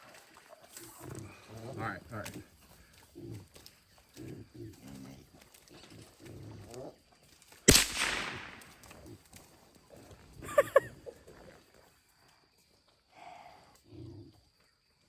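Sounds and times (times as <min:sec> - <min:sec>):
hogs grunting: 0:00.7 - 0:07.0
rifle shot: 0:07.7 - 0:09.0.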